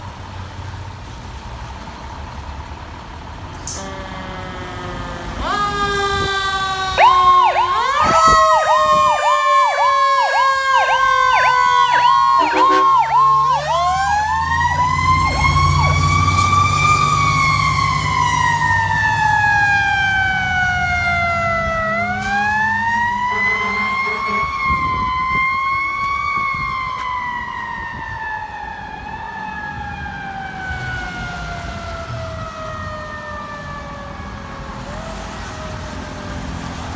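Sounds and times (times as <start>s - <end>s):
truck engine rumbling: 1.6s - 27.4s
mechanical siren wailing: 4.1s - 34.7s
electronic siren yelping: 5.3s - 22.2s.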